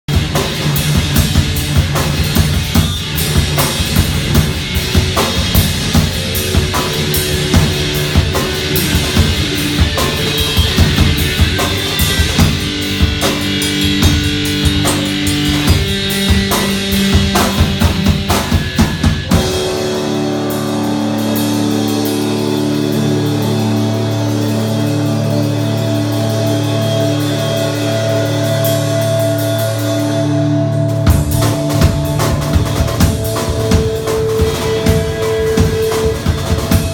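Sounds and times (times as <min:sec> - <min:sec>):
drum kit pounding: 0:00.1 - 0:36.9
heavy rock band playing: 0:00.1 - 0:36.9.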